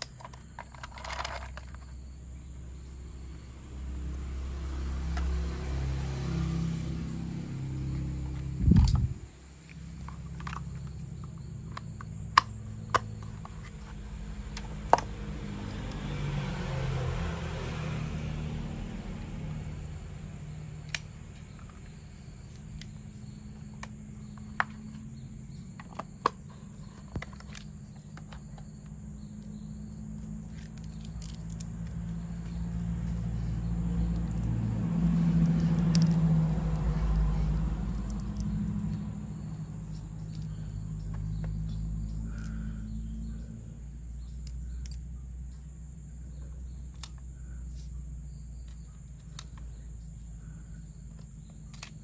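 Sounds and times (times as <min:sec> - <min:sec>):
plastic toy parts clicking: 0:00.0 - 0:01.8, 0:30.5 - 0:32.0, 0:35.5 - 0:36.2, 0:51.2 - 0:52.0
steady low hum: 0:00.0 - 0:52.0.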